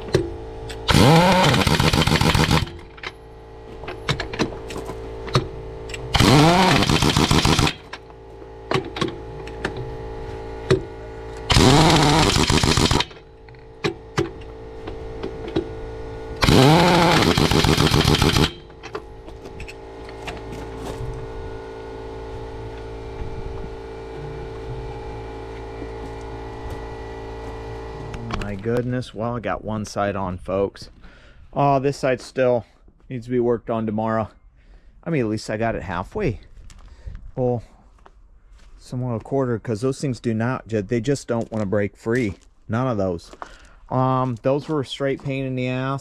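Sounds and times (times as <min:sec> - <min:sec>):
impact wrench hammering: 0:00.0 - 0:03.2, 0:03.8 - 0:09.9, 0:10.6 - 0:15.7, 0:16.4 - 0:20.6
steady hum: 0:00.0 - 0:46.0.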